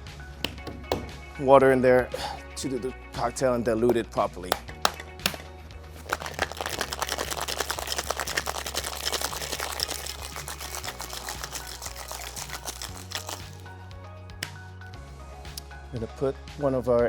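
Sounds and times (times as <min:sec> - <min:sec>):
ice rattling in cocktail shaker: 0:06.0 - 0:13.8.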